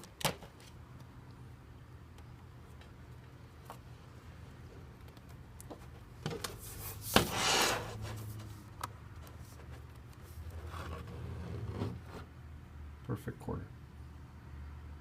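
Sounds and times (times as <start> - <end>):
brief scraping rub: 6.6 - 8.6.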